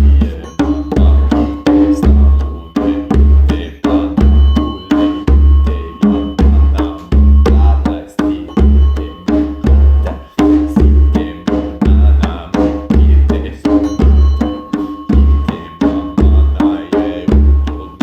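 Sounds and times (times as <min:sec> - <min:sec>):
faint steady high tone: 0:00.0 - 0:18.0
deep hand drum strokes: 0:04.2 - 0:07.8.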